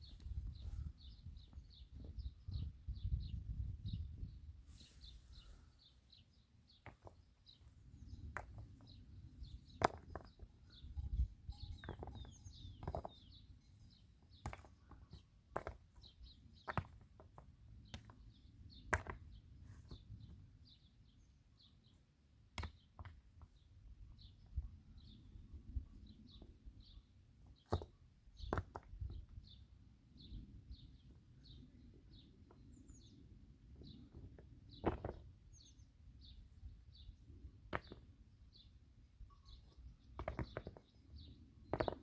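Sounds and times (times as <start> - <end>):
small birds chirping: 0.0 - 42.0.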